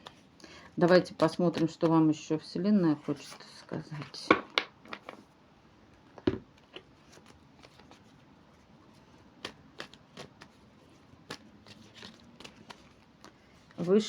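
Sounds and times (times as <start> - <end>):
cards being shuffled: 0.8 - 2.0, 6.6 - 8.2, 8.9 - 14.0.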